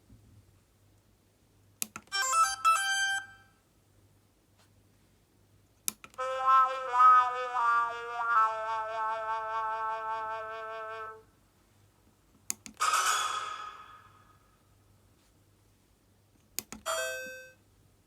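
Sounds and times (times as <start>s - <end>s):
click: 1.8s - 2.1s, 5.8s - 6.2s, 12.5s - 12.8s, 16.4s - 16.8s.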